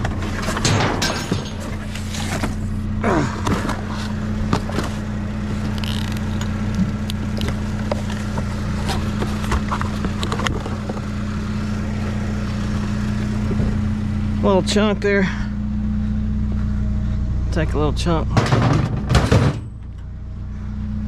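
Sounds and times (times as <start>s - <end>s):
scrap metal knocks and clatter: 0.0s - 2.6s, 18.3s - 20.0s
vehicle engine idling: 0.0s - 21.0s.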